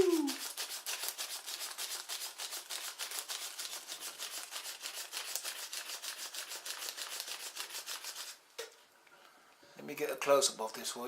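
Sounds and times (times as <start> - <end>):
paper rustling: 0.0 - 8.4.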